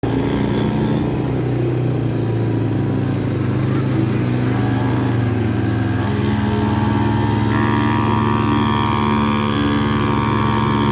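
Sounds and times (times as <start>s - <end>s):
vehicle engine running: 0.0s - 10.9s.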